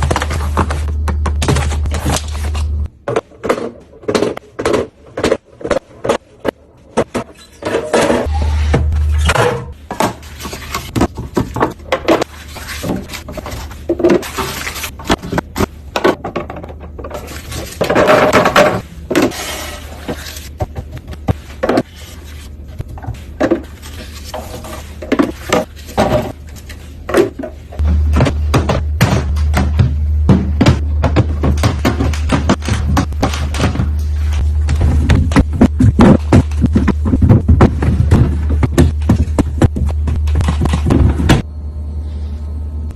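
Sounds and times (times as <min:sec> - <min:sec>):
steady low hum: 0:13.0 - 0:42.9.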